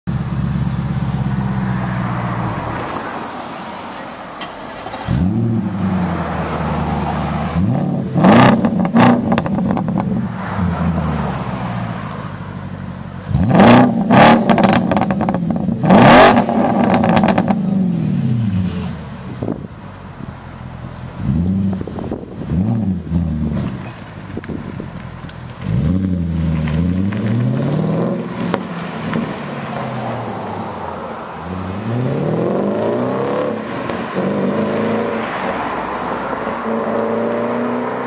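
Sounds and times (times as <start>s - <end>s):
exhaust crackles: 4.7s - 30.4s
car engine revving: 4.8s - 19.7s, 20.3s - 38.0s.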